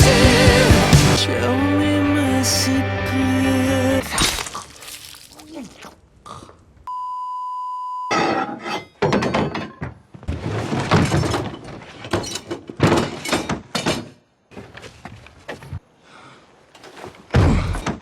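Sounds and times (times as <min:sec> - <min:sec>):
crashes thuds and breaking: 0:04.0 - 0:05.4, 0:08.4 - 0:14.2, 0:17.3 - 0:18.0
high beep tone: 0:06.9 - 0:08.2.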